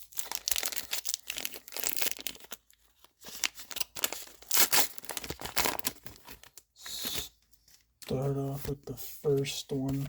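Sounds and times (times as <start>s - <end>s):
foil wrapper crinkling and tearing: 0.0s - 6.7s.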